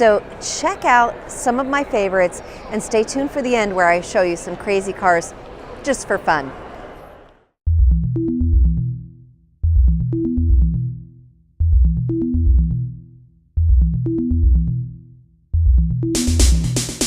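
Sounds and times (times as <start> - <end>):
electronic music with drum-machine beat: 7.7 - 17.0.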